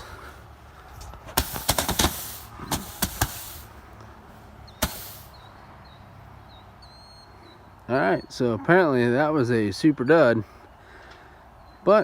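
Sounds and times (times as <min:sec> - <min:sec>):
firework pops and cracks: 0:01.3 - 0:03.6, 0:04.8 - 0:05.3.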